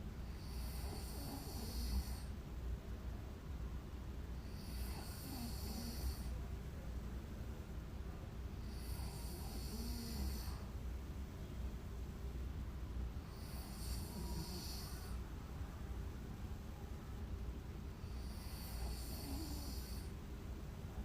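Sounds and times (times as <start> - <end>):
woman snoring: 0.4 - 2.3, 4.4 - 6.3, 8.6 - 10.7, 13.3 - 15.2, 18.0 - 20.1.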